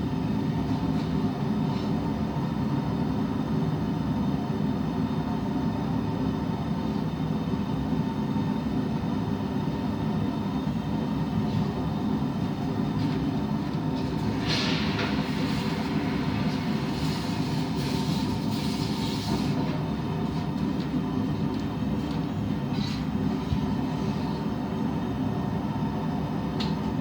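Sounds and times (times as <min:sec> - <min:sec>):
steady hum: 0:08.5 - 0:27.0.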